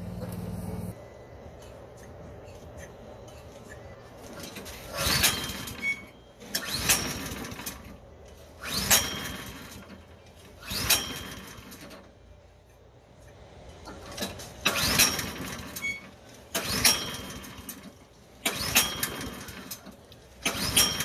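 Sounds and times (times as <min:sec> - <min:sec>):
snowblower engine cranking: 0:13.8 - 0:21.0.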